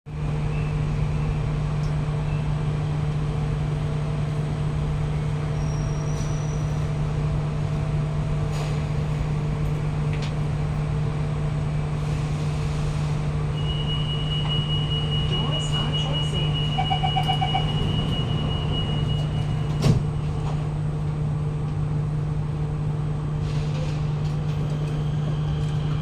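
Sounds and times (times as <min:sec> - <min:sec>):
metro train carriage hum: 0:00.1 - 0:26.0
high steady tone: 0:13.6 - 0:19.6.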